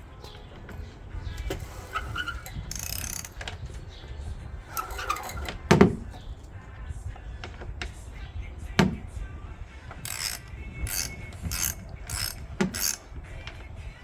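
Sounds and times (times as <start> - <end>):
ratchet clicks: 1.4 - 3.6, 10.0 - 13.7
heavy knocks: 8.8 - 9.2.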